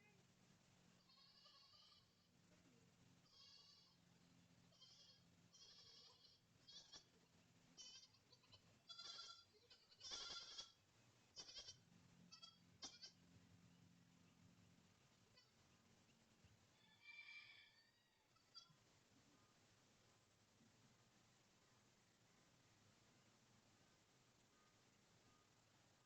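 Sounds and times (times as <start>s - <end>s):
goats bleating: 4.8s - 7.1s, 7.8s - 10.8s.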